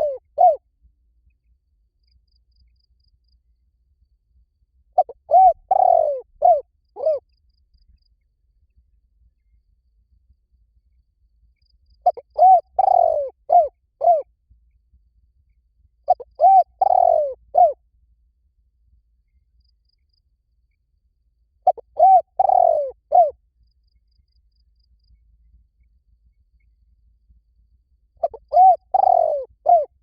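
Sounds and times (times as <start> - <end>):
dove cooing: 0.0 - 0.6, 5.0 - 7.3, 12.0 - 14.3, 16.1 - 17.8, 21.6 - 23.4, 28.2 - 30.0.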